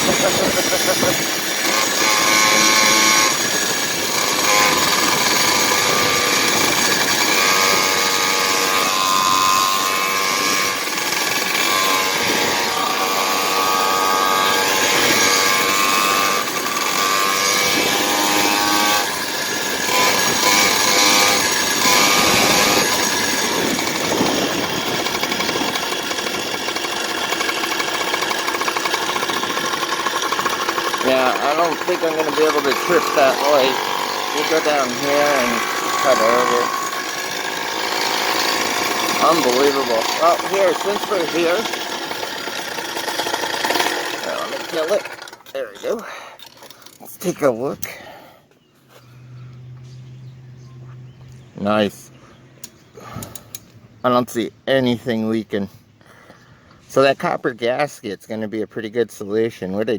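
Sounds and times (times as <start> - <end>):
two-stroke engine running hard: 0.0 - 45.6.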